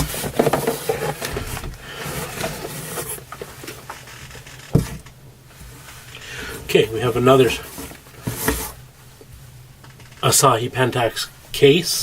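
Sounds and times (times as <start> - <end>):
rustling and scraping of cases: 0.0 - 11.2.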